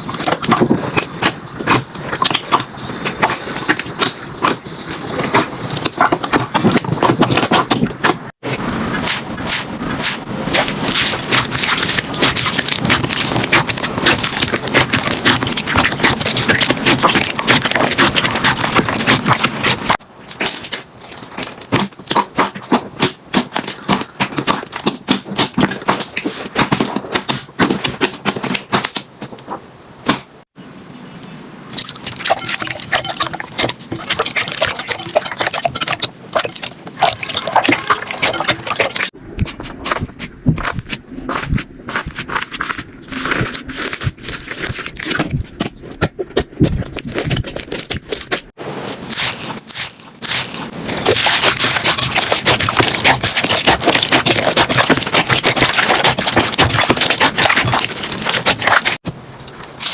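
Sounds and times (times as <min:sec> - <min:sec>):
slime crackling and popping: 0:08.9 - 0:29.0, 0:40.7 - 0:59.0.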